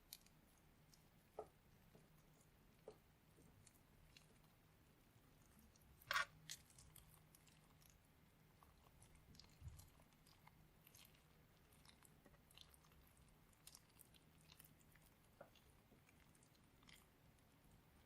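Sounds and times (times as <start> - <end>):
slime crackling and squishing: 0.0 - 18.0.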